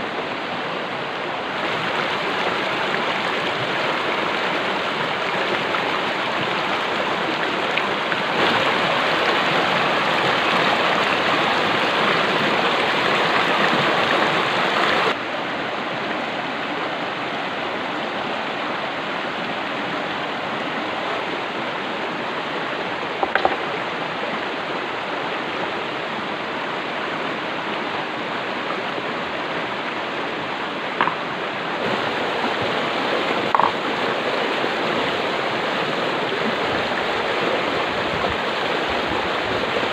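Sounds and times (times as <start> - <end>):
stream water flowing: 0.0 - 39.9
short clicks or knocks: 23.2 - 23.7, 31.0 - 31.2, 33.5 - 33.8.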